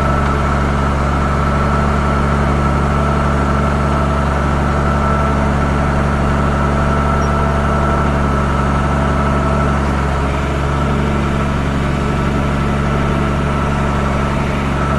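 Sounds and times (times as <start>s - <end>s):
diesel engine running: 0.0s - 14.9s.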